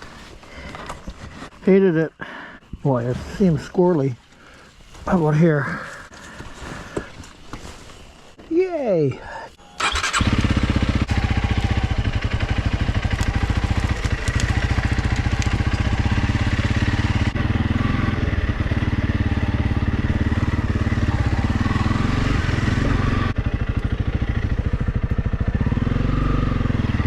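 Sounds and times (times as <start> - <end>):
motorcycle engine running: 9.8 - 27.0.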